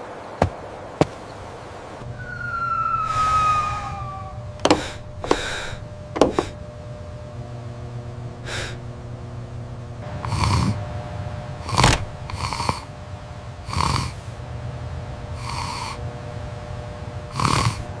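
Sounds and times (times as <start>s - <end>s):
low steady hum: 0.0s - 18.0s
breathy snores: 8.4s - 8.9s, 10.2s - 10.8s, 11.6s - 12.9s, 13.6s - 14.4s, 15.4s - 16.1s, 17.3s - 18.0s.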